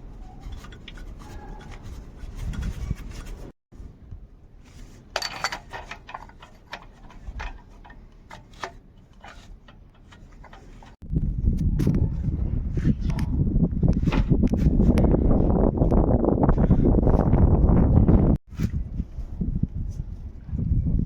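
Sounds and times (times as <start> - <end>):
tools clicking and scraping: 0.1 - 3.5, 4.8 - 11.0.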